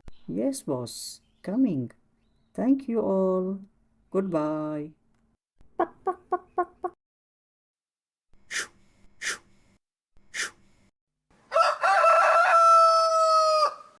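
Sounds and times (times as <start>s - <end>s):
rooster crowing: 11.5s - 14.0s.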